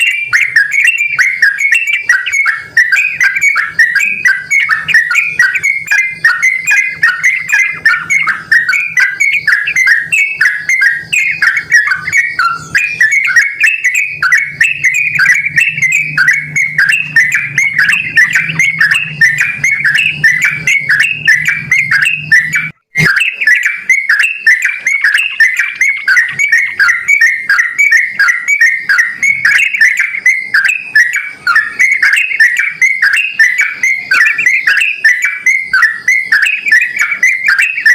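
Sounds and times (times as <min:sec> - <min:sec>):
bird singing bubbly chattering notes: 0:00.0 - 0:37.9.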